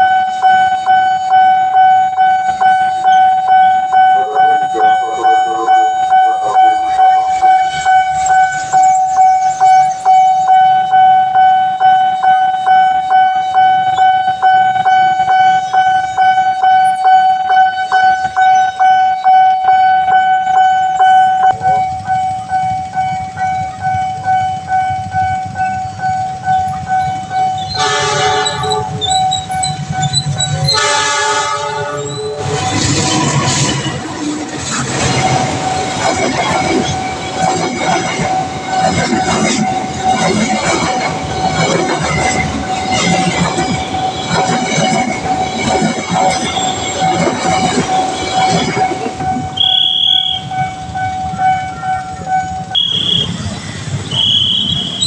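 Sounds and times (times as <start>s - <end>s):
train horn: 0.0s - 8.7s, 27.6s - 29.6s, 30.5s - 32.9s, 48.1s - 55.0s
level crossing alarm ringing: 0.0s - 55.0s
train rumble: 0.0s - 55.0s.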